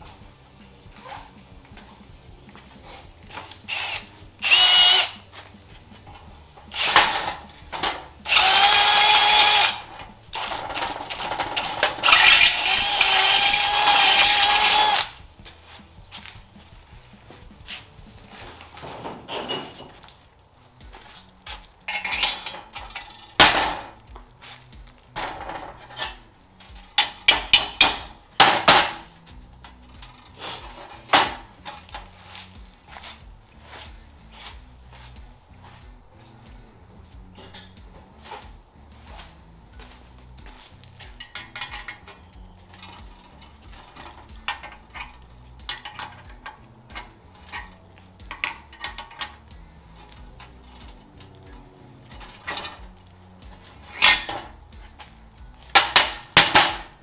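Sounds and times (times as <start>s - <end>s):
metal tools clanking: 0.0s - 2.2s, 3.2s - 4.1s, 6.1s - 15.0s, 18.2s - 20.3s, 21.8s - 24.0s, 25.1s - 32.5s, 37.3s - 38.5s, 39.8s - 55.0s
faint background music: 0.0s - 57.0s.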